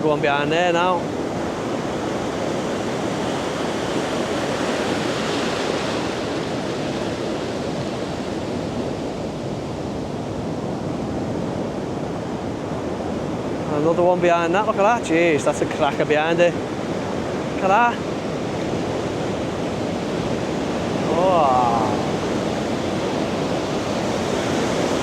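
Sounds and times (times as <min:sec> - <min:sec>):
waves breaking on beach: 0:00.0 - 0:25.0.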